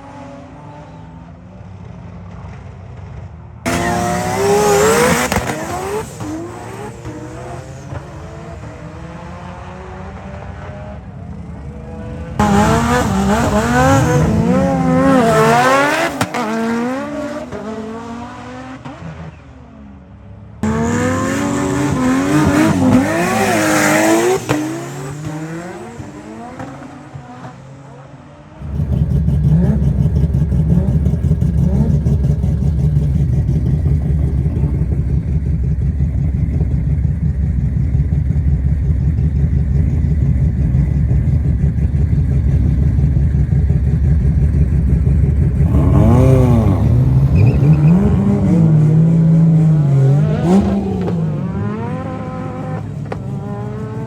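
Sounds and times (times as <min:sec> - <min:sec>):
car engines revving: 0:00.0 - 0:54.0
deep engine rumble: 0:28.6 - 0:54.0.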